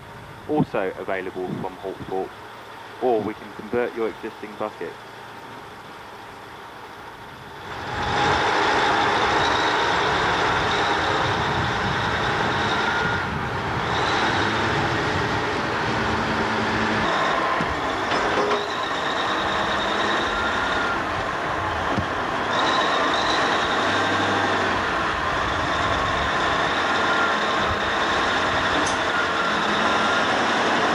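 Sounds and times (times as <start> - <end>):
loading machine running: 1.2 - 30.9.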